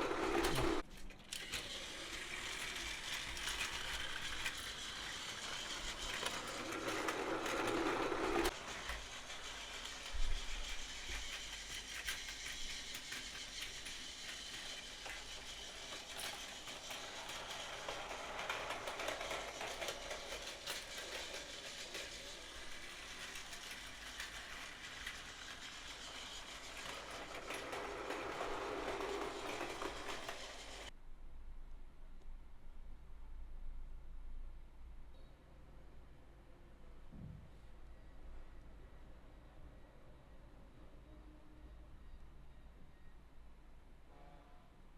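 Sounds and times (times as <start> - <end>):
wheels clicking on plastic track: 0.0 - 30.9
toy train motor whirring: 0.0 - 31.0.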